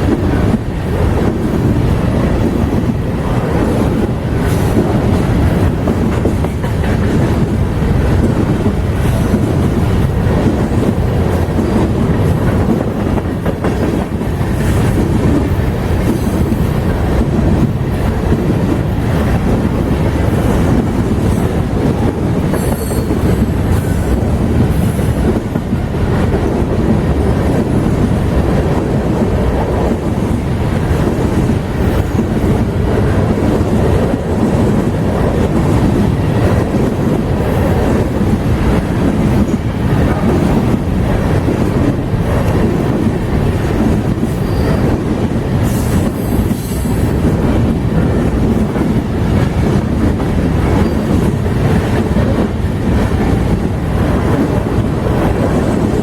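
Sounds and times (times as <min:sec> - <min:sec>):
freight train wheels clattering: 0:00.0 - 0:56.0
train wheel squeal: 0:22.5 - 0:24.2, 0:44.2 - 0:45.0, 0:50.7 - 0:51.2.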